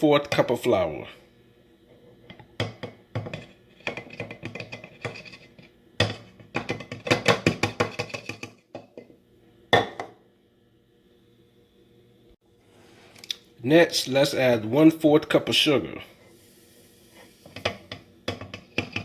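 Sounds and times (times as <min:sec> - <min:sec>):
spoon tapping and scraping a mug: 0:02.3 - 0:09.1, 0:17.4 - 0:19.0.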